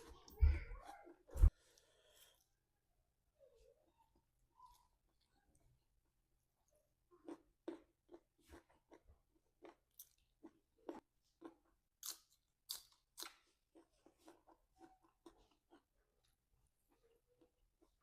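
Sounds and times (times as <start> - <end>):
person chewing crisp vegetables: 7.1 - 18.0.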